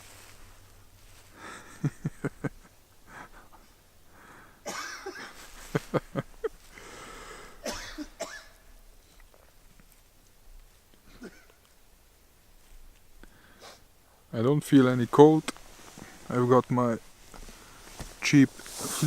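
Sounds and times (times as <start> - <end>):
person coughing: 4.7 - 5.3, 7.6 - 8.6, 11.1 - 11.6
wheezy breath: 6.7 - 7.6, 13.2 - 13.9.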